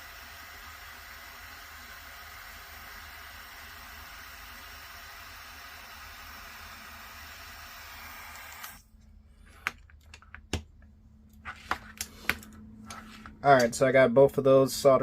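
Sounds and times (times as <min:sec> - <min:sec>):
heat gun hissing: 0:00.0 - 0:08.9.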